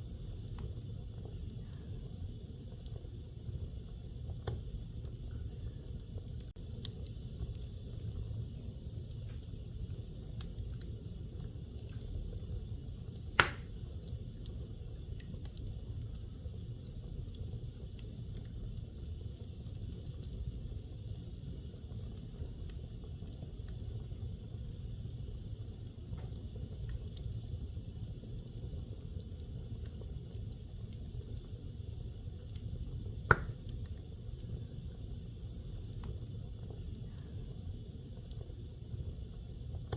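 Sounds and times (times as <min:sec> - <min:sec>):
fire crackling: 0:00.0 - 0:39.9
fire low rumble: 0:00.0 - 0:39.9
loud sharp pops: 0:13.4 - 0:13.8, 0:33.3 - 0:33.6.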